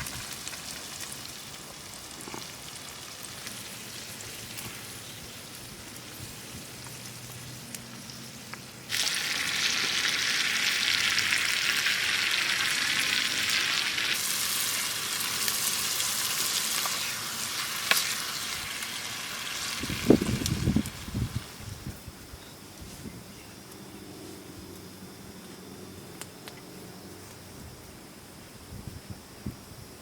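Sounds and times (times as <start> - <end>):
food sizzling in a pan: 0.0 - 21.7.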